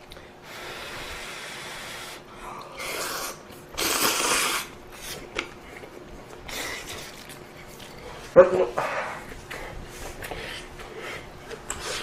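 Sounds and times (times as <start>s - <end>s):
eating sounds: 2.5s - 12.0s.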